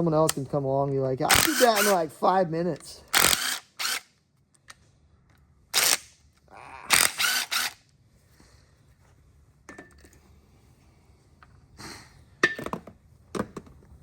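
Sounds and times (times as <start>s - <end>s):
sharp mechanical tool bursts: 1.3s - 2.1s, 3.1s - 4.1s, 5.8s - 6.2s, 6.9s - 7.8s.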